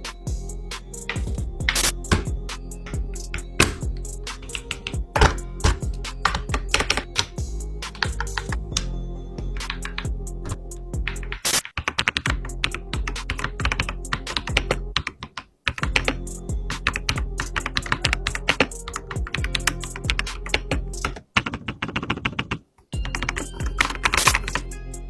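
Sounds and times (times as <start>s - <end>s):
mechanical keyboard typing: 16.9s - 24.6s.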